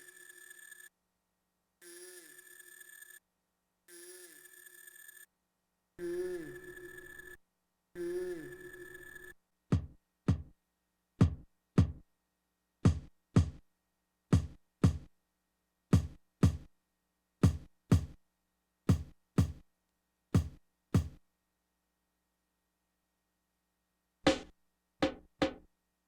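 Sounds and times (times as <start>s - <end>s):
drum sample hits with low thud: 12.9s - 13.6s, 16.0s - 16.6s, 17.4s - 18.2s, 18.9s - 19.6s, 20.4s - 21.2s, 24.3s - 25.6s.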